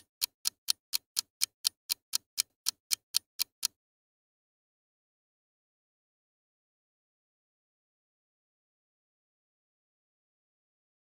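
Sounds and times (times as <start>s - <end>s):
clock ticking: 0.0s - 3.8s.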